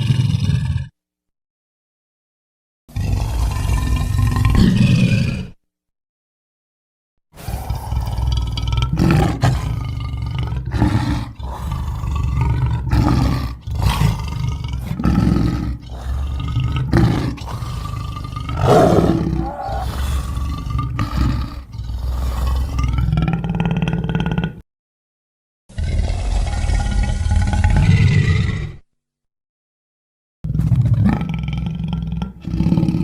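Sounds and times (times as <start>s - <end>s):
deep animal roars and growls: 2.9s - 5.6s, 7.4s - 24.6s, 25.7s - 28.8s, 30.5s - 33.0s.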